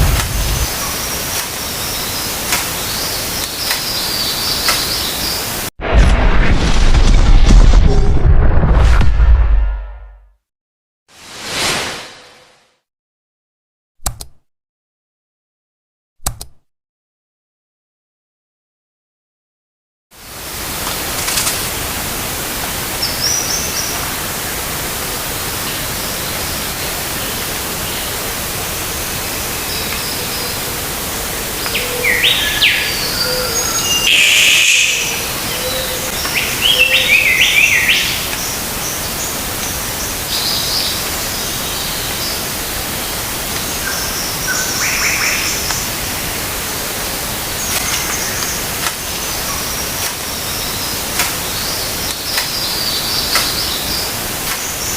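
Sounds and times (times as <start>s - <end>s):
outdoor ambience hiss: 0.0s - 5.7s, 20.2s - 54.9s
birds chirping: 31.5s - 39.4s.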